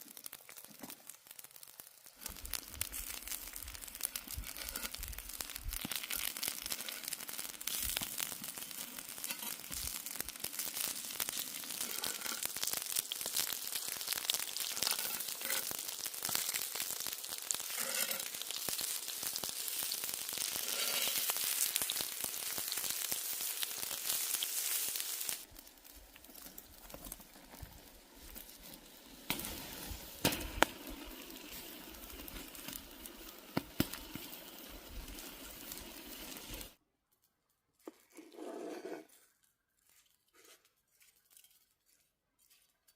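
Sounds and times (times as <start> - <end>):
food sizzling over open fire: 0.0 - 36.8.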